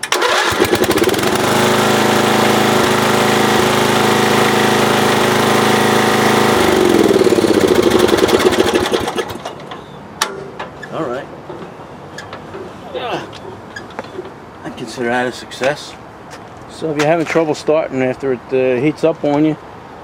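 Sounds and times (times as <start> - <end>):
lawn tractor engine starting: 0.0 - 9.3.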